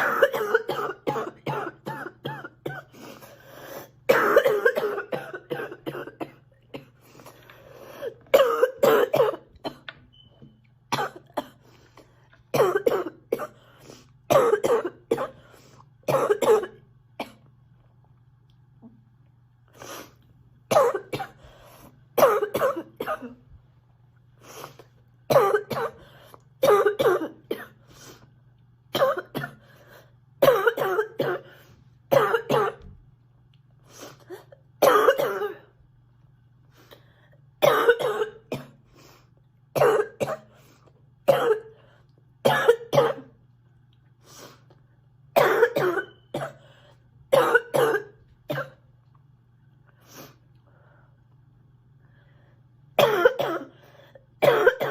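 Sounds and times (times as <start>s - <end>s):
girl coughing: 0.0s - 2.9s, 4.0s - 7.0s, 8.3s - 9.9s, 12.5s - 13.6s, 14.3s - 15.4s, 16.1s - 17.4s, 20.7s - 21.4s, 22.2s - 23.4s, 25.3s - 26.0s, 26.6s - 27.8s, 29.0s - 29.6s, 30.4s - 31.5s, 32.1s - 32.9s, 34.3s - 35.8s, 37.6s - 38.8s, 39.8s - 40.5s, 41.3s - 41.8s, 42.4s - 43.3s, 45.4s - 46.6s, 47.3s - 48.8s, 53.0s - 53.8s, 54.4s - 54.9s.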